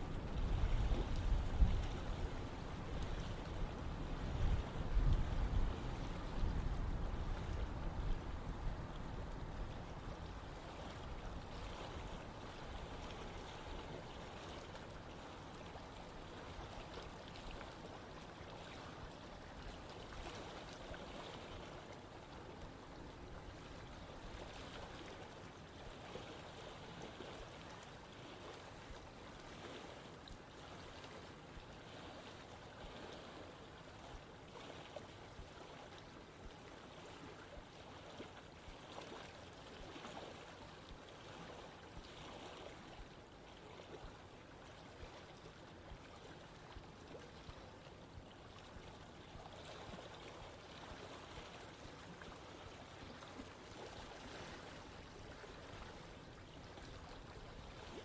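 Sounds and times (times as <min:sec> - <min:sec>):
running water rushing: 0:39.0 - 0:58.0.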